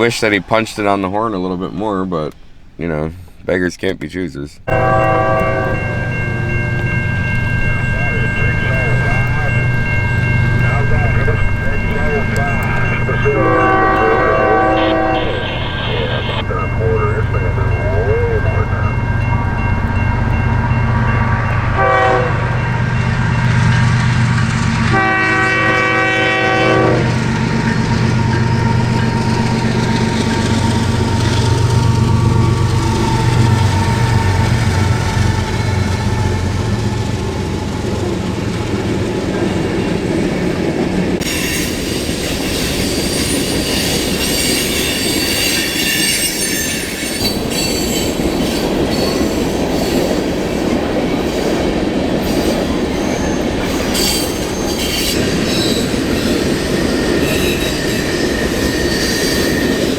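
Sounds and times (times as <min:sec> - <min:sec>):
locomotive engine droning: 0:00.0 - 0:59.9
steel wheels squealing on rails: 0:00.0 - 0:59.9
train horn blasts: 0:04.7 - 0:37.5.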